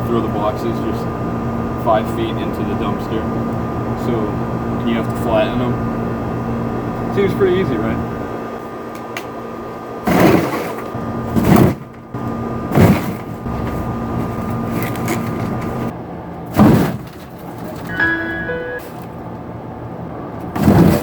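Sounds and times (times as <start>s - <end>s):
steady mechanical hum: 0.0s - 21.0s.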